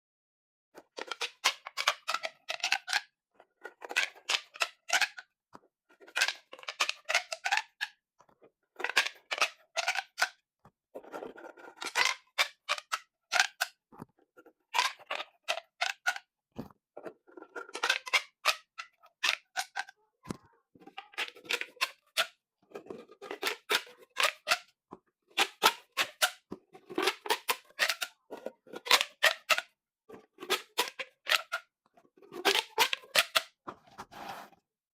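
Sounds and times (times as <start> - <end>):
plastic pop tubes clicking: 11.9 - 13.8, 17.7 - 20.4, 32.4 - 33.5.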